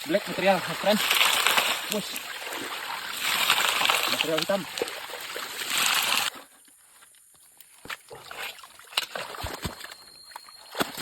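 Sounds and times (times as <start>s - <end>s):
water splashing and sloshing: 0.0s - 6.5s, 7.6s - 11.0s.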